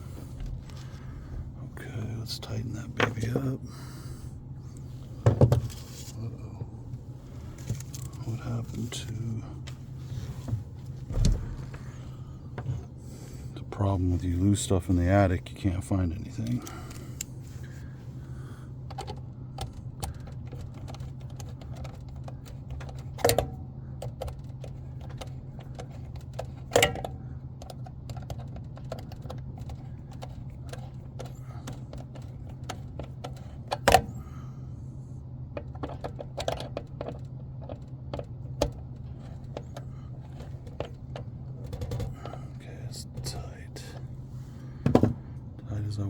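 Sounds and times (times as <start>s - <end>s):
steady low hum: 0.0s - 46.0s
tools and parts rattling: 18.9s - 34.2s, 35.6s - 44.0s.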